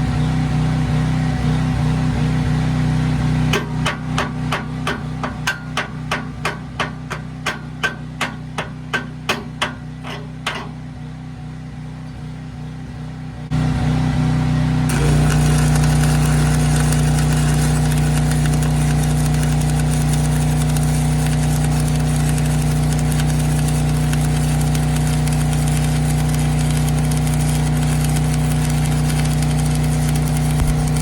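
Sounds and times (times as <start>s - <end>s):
welder engine running: 0.0s - 11.0s, 13.3s - 31.0s
hammer strikes: 3.5s - 10.8s.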